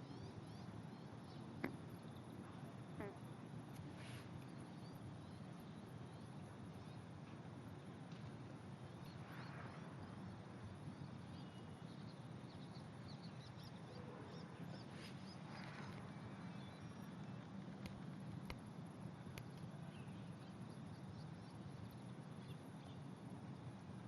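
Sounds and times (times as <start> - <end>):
low background noise: 0.0 - 24.0
frogs croaking: 1.2 - 3.6.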